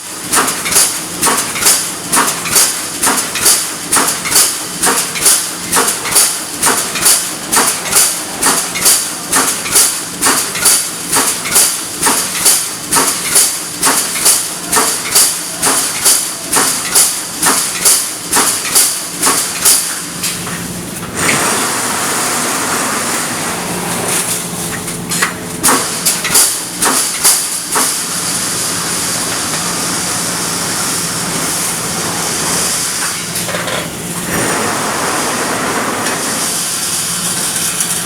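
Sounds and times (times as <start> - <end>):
welding machine metallic strikes: 0.1 - 21.4, 24.2 - 28.0.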